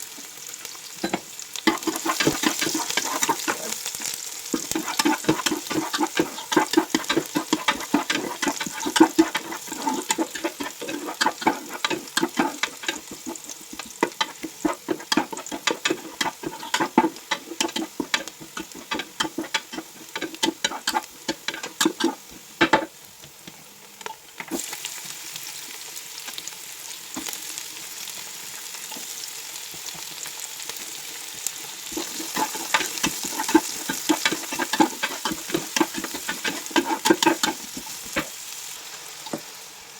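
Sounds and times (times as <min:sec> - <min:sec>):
food sizzling: 0:00.0 - 0:39.9
spatula scraping and tapping pan: 0:01.0 - 0:24.6, 0:31.9 - 0:38.4.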